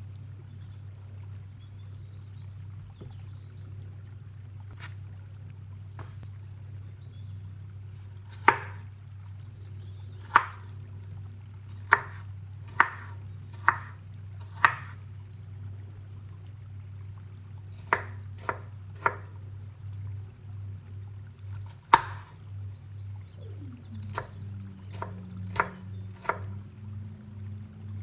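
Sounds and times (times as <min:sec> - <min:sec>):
steady low hum: 0:00.0 - 0:28.0
knife chopping on cutting board: 0:08.3 - 0:08.8, 0:10.2 - 0:10.7, 0:11.7 - 0:15.0, 0:17.8 - 0:19.3, 0:21.9 - 0:22.3, 0:24.1 - 0:26.6.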